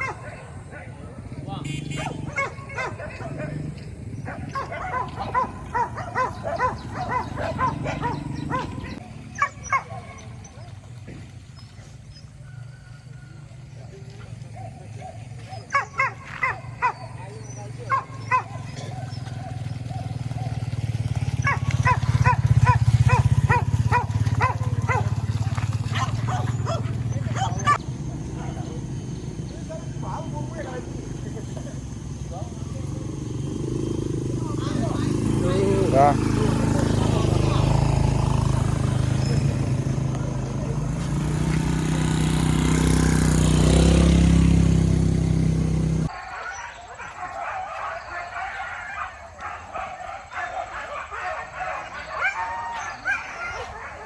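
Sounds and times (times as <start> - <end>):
dog yelping: 0.0 - 1.3, 1.9 - 10.7, 14.6 - 28.7, 46.0 - 54.0
dog barking: 0.0 - 10.9, 14.4 - 28.8, 46.0 - 54.0
motorcycle engine running: 0.0 - 46.1.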